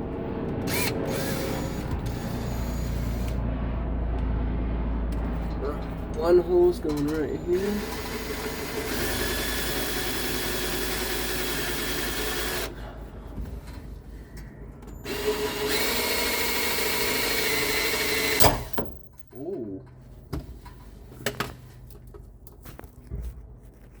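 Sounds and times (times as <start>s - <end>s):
power drill boring into metal: 0.6s - 3.3s, 7.2s - 12.7s, 15.0s - 19.0s.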